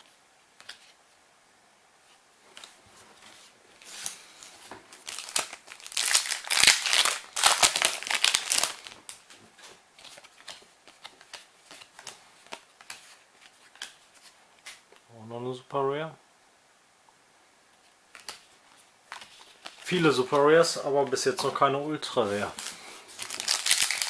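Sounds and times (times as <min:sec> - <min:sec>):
cards clicking and rustling: 0:03.8 - 0:15.0, 0:22.6 - 0:24.0
foil wrapper crinkling: 0:04.9 - 0:09.2, 0:22.6 - 0:24.0.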